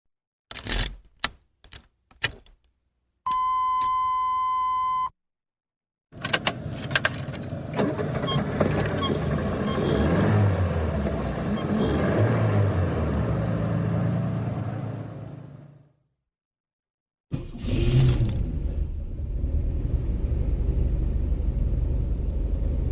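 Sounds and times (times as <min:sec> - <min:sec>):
car engine starting and idling: 0:06.2 - 0:15.8, 0:17.3 - 0:22.9.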